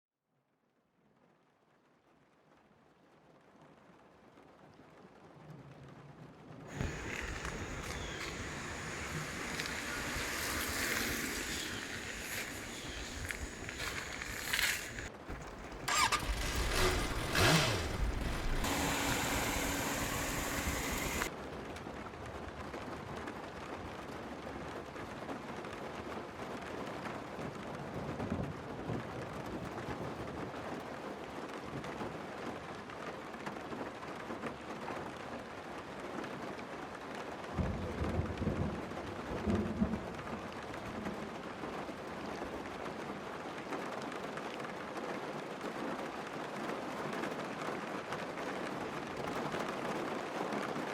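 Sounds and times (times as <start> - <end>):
heavy rain: 6.7 - 21.3.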